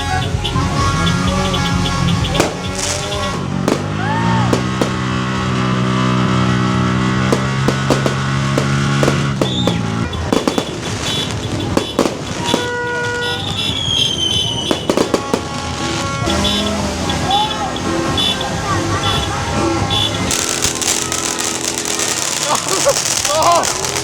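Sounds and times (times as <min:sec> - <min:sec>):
horn blast: 0:00.0 - 0:24.0
firecracker cracks: 0:02.4 - 0:05.5, 0:07.2 - 0:15.7, 0:20.0 - 0:24.0
high whistle: 0:13.7 - 0:14.9.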